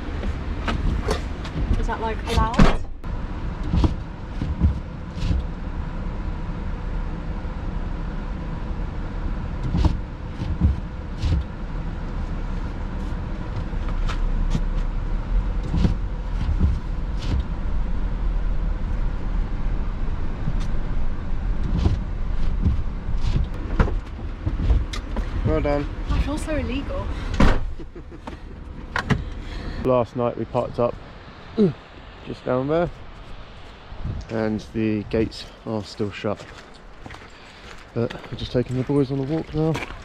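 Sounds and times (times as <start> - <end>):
van engine rumbling: 0.0 - 40.0.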